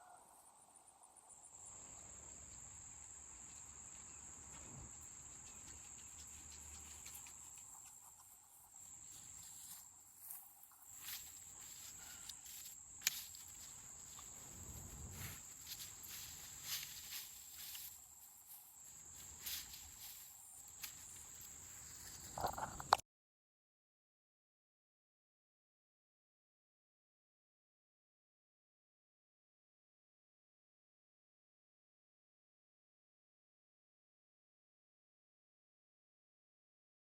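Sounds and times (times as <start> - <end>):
insects trilling: 0.0 - 23.0.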